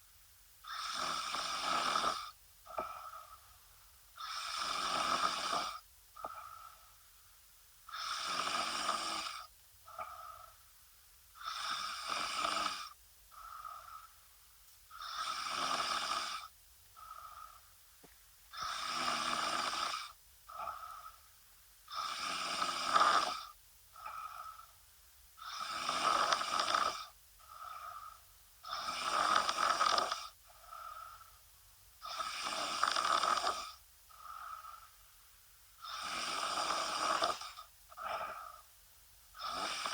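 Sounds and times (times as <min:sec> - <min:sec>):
woman snoring: 0:00.6 - 0:03.4, 0:04.2 - 0:06.8, 0:07.9 - 0:10.6, 0:11.4 - 0:14.2, 0:14.9 - 0:17.6, 0:18.5 - 0:21.2, 0:21.9 - 0:24.7, 0:25.4 - 0:31.3, 0:32.0 - 0:34.9, 0:35.8 - 0:38.7, 0:39.4 - 0:39.9.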